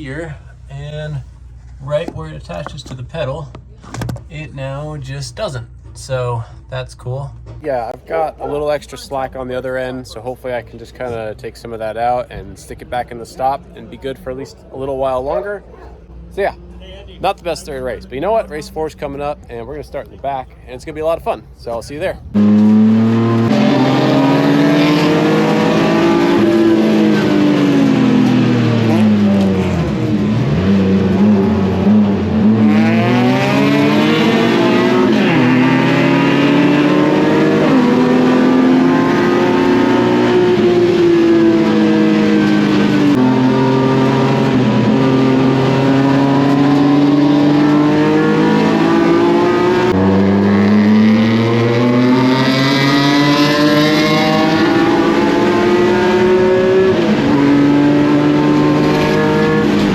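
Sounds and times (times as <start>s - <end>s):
race car engine revving: 22.3s - 59.9s.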